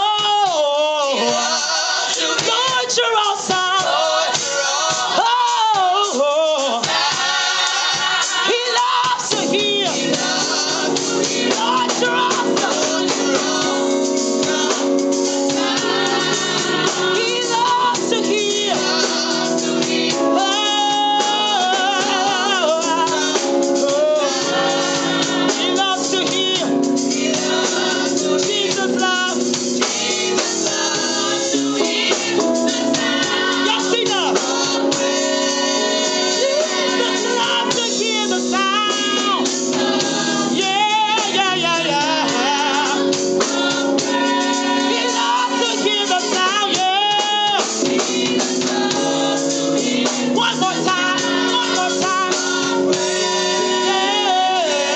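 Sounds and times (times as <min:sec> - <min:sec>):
gospel group singing: 0:00.0 - 0:54.9
instrumental backing chords: 0:00.0 - 0:54.9.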